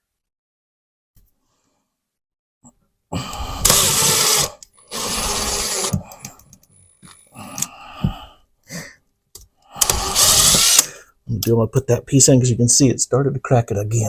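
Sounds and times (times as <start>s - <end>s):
cordless drill driving a screw: 3.6s - 6.0s, 9.8s - 10.9s.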